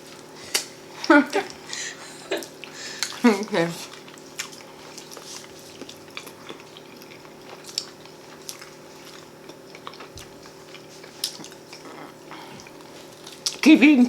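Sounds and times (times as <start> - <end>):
faint steady hum: 0.0 - 14.0
people chewing ribs: 0.0 - 14.0
wet smacks and clicks: 7.6 - 8.7.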